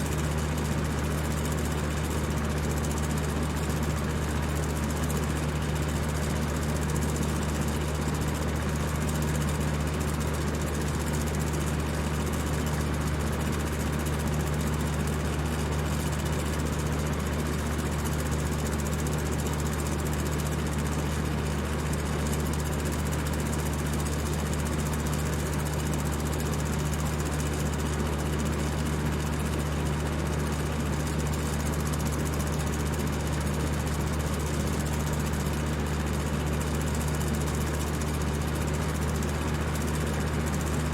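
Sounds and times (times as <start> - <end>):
electric fan whirring: 29.6 - 40.9.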